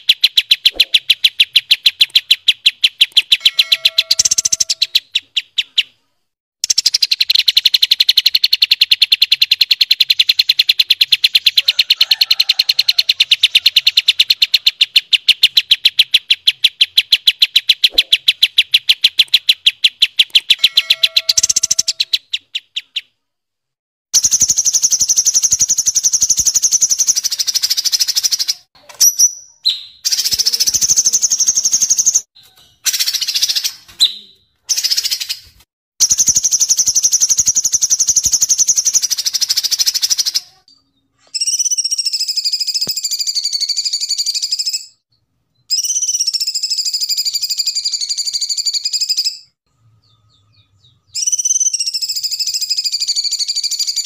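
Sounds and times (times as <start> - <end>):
rapid bird trill: 0.0 - 6.0, 6.6 - 23.1, 24.2 - 40.7, 41.4 - 45.0, 45.6 - 54.0
higher steadier bird trill: 0.0 - 23.2, 24.2 - 54.0.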